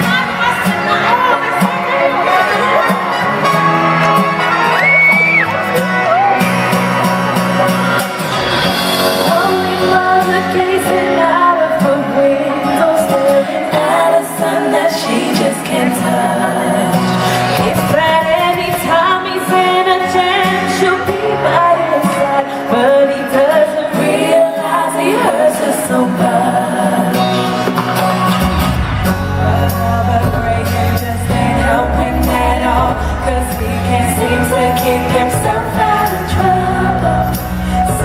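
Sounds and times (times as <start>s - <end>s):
female vocal group singing: 9.2s - 27.6s, 29.4s - 38.0s
heavy bass line: 28.2s - 38.0s.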